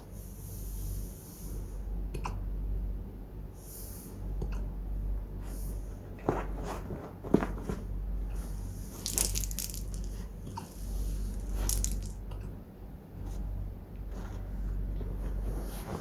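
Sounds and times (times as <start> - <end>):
crisp clicking: 9.0 - 12.5.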